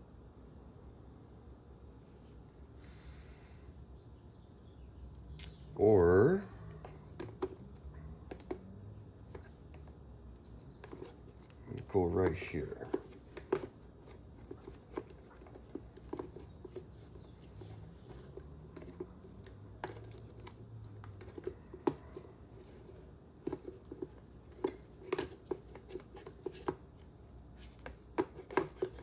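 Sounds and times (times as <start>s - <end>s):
plastic parts clicking and tapping: 6.8s - 26.9s, 27.6s - 29.0s.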